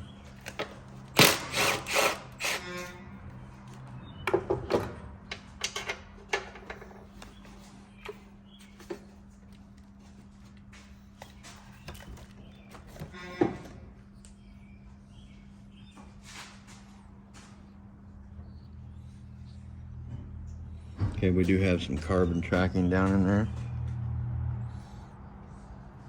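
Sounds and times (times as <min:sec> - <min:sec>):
steady low hum: 0:07.0 - 0:26.0.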